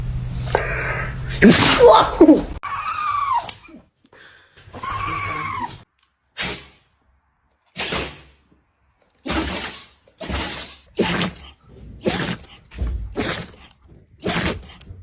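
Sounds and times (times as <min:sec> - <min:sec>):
dog sneezing: 0:01.4 - 0:02.5, 0:06.4 - 0:06.8, 0:07.8 - 0:08.4, 0:09.2 - 0:12.5, 0:14.2 - 0:14.8.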